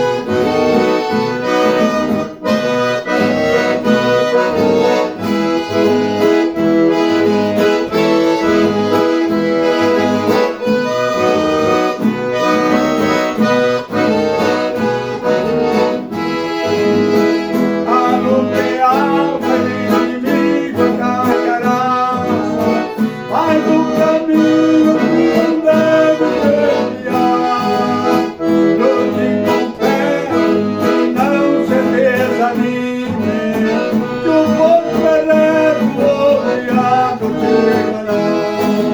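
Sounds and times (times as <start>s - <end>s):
accordion playing chords: 0.0s - 38.9s.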